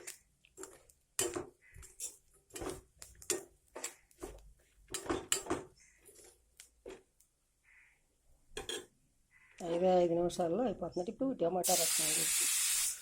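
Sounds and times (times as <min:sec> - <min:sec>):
spoon scraping and knocking a pan: 0:00.0 - 0:07.1, 0:08.6 - 0:08.9.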